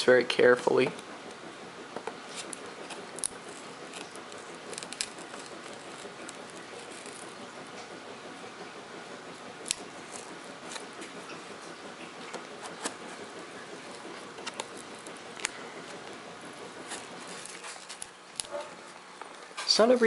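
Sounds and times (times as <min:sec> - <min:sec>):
cardboard and tape snapping: 0:02.4 - 0:07.3.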